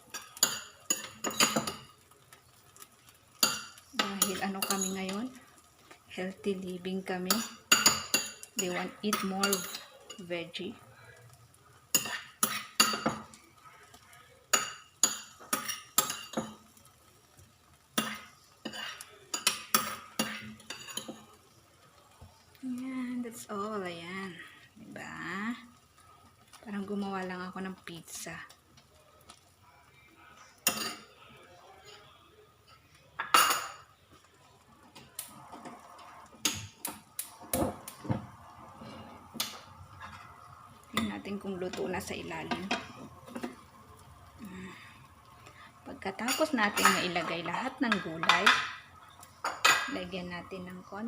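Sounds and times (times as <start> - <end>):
metal spoon clinking on cookware: 0.0 - 2.0, 2.7 - 5.6, 7.2 - 10.3, 11.9 - 13.9, 14.5 - 16.9, 17.7 - 21.5, 30.6 - 31.1, 32.7 - 33.9, 42.4 - 43.6, 46.2 - 50.0.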